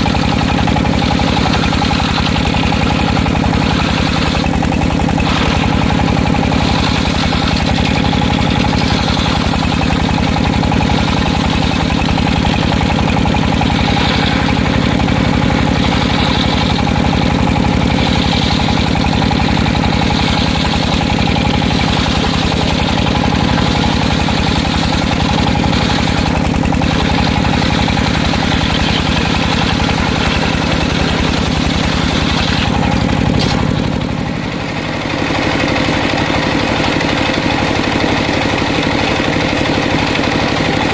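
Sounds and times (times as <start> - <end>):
sawmill engine running: 0.0 - 40.9.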